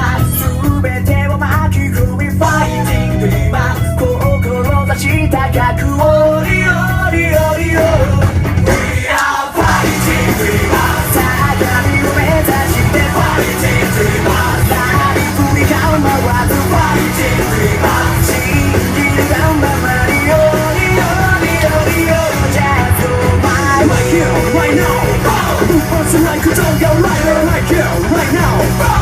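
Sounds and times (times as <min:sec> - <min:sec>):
loud rock music: 0:00.0 - 0:29.0
person singing: 0:00.0 - 0:29.0.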